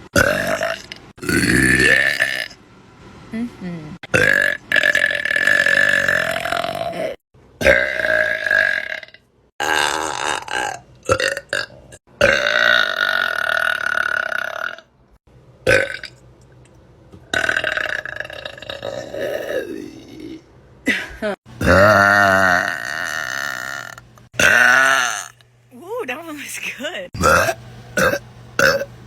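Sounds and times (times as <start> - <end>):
woman burping: 4.2 - 14.8, 17.3 - 25.4, 27.2 - 28.9.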